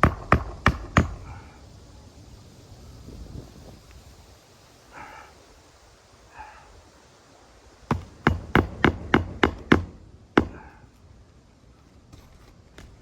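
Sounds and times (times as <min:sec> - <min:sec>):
hammer striking roofing nail: 0:00.0 - 0:01.3, 0:07.9 - 0:10.7.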